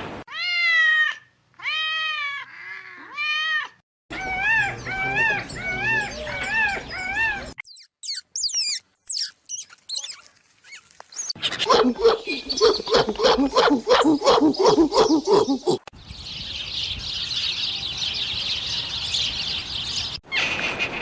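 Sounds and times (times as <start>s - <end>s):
high thin squeaks: 7.0s - 11.4s.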